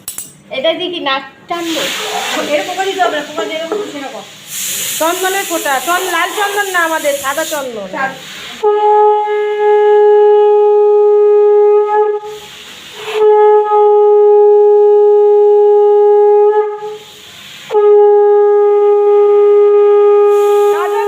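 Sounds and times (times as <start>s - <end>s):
conch shell blasts: 8.6s - 17.1s, 17.7s - 21.0s.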